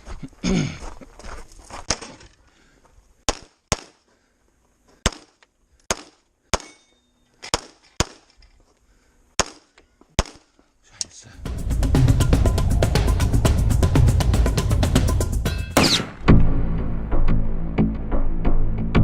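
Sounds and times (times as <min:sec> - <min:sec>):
pistol shots with echo: 0:15.8 - 0:16.2.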